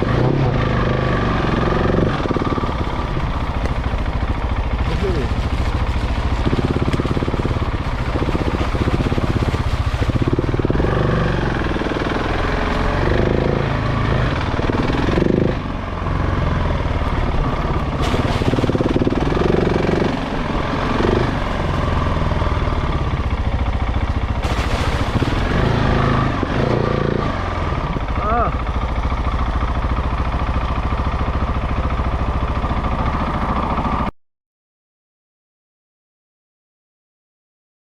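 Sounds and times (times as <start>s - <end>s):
motorcycle engine revving: 0.0s - 34.1s.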